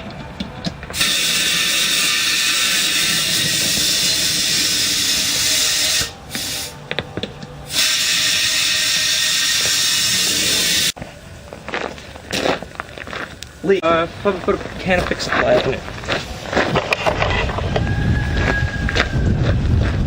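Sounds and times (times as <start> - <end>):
compressed air hissing into tire: 1.0 - 11.0.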